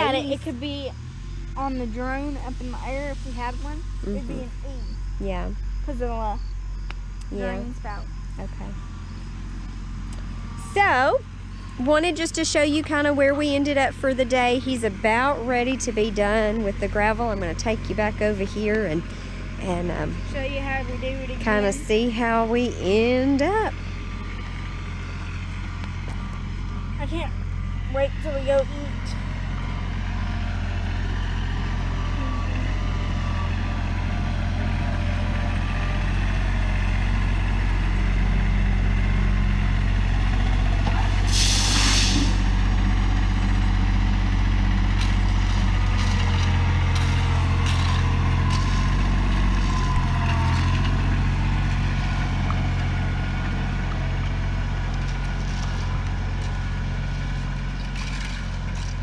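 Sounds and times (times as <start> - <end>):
tractor engine running: 0.0 - 59.0
short hiss: 41.2 - 42.5.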